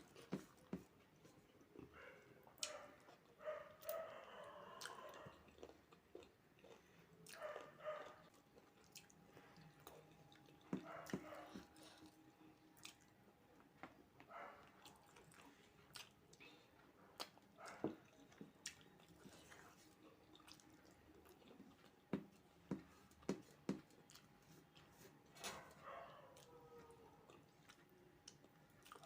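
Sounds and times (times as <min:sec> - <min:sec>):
person chewing: 0:04.7 - 0:13.2, 0:14.6 - 0:25.2, 0:26.2 - 0:29.0.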